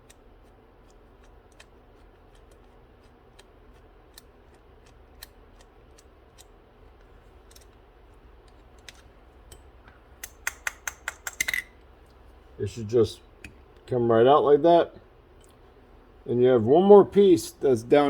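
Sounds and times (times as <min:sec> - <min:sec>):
screwdriver metal clicks: 0:10.2 - 0:11.7.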